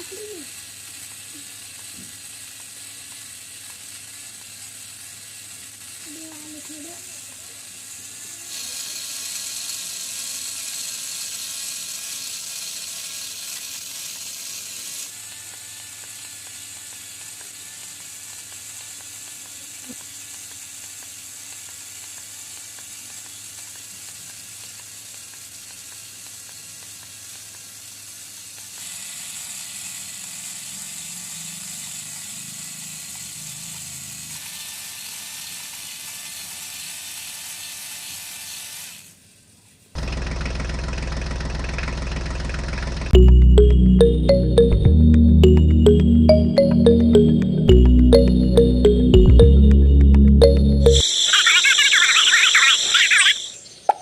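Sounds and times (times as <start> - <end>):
small electric motors whirring: 0.0 - 39.3.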